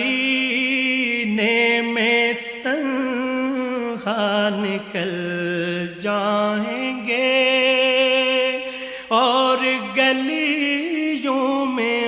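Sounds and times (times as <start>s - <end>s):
person singing with long held notes: 0.0s - 12.0s.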